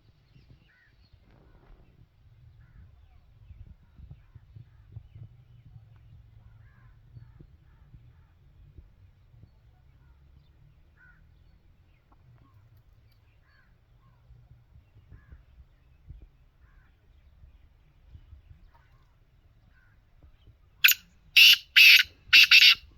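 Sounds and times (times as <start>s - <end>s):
bird chirps: 20.8s - 22.8s
harsh francolin call: 20.8s - 22.9s.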